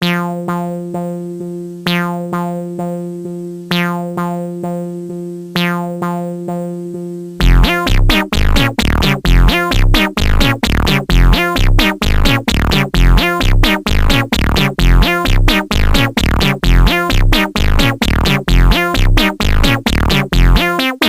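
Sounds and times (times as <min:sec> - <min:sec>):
decaying synth keyboard notes: 0:00.0 - 0:21.0
deep bass: 0:07.4 - 0:20.7.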